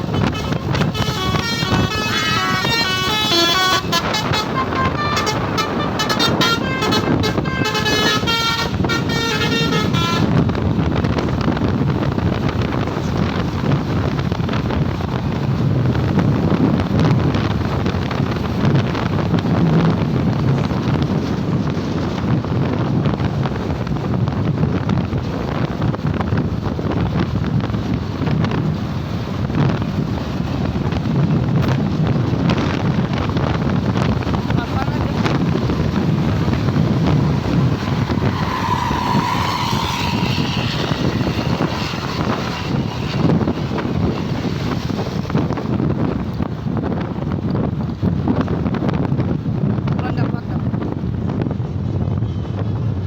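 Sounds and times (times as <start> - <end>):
bus horn playing a melody: 0.0 - 10.6
bus engine: 0.0 - 53.0
wind on the microphone: 0.0 - 53.0.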